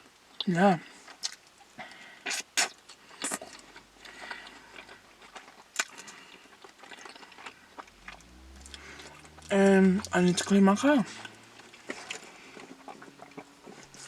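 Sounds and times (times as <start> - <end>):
person chewing food: 1.0 - 8.2.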